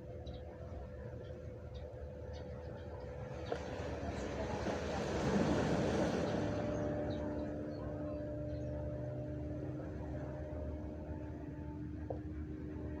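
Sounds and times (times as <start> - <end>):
steady low hum: 0.0 - 13.0
wave washing on shore: 4.1 - 6.8.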